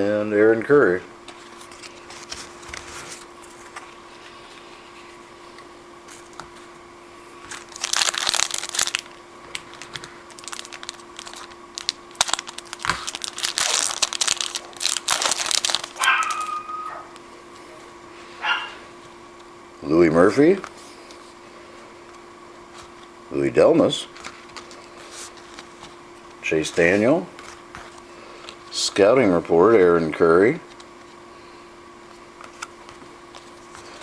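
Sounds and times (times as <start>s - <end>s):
foil wrapper crinkling and tearing: 7.4s - 17.2s.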